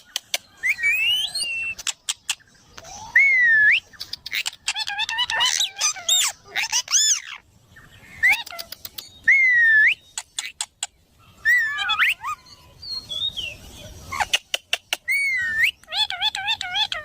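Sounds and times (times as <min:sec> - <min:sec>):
parrot whistling and chirping: 0:00.6 - 0:01.9, 0:02.8 - 0:07.4, 0:08.2 - 0:10.6, 0:11.4 - 0:14.4, 0:15.0 - 0:17.0.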